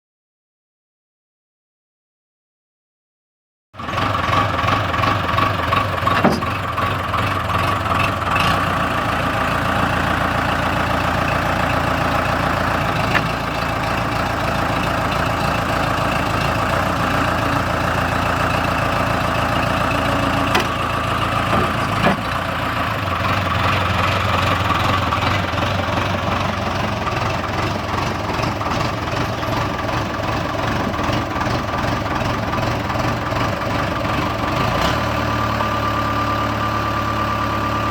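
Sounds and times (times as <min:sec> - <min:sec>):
diesel engine idling: 0:03.8 - 0:37.9.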